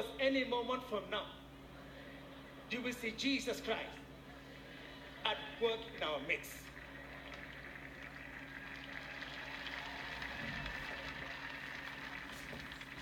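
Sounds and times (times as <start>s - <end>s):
people clapping: 6.6s - 13.0s.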